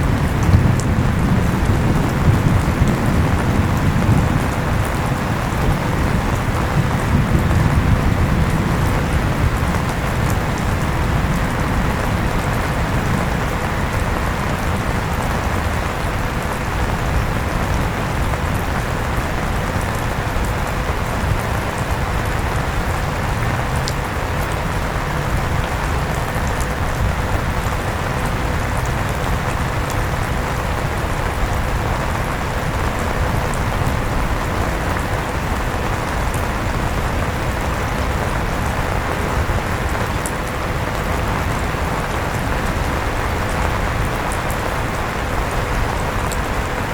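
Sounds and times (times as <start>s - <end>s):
rain falling: 0.0s - 46.9s.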